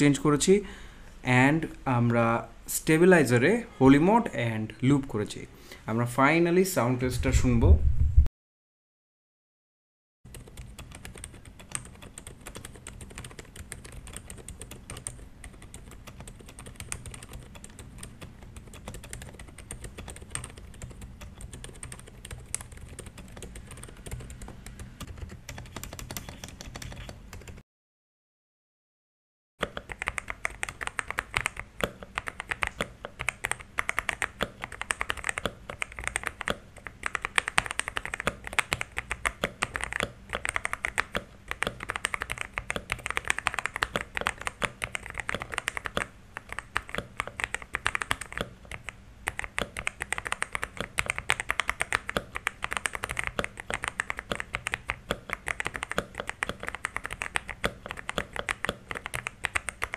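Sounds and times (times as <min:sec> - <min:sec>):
mechanical keyboard typing: 0:10.3 - 0:27.6, 0:29.6 - 0:59.9.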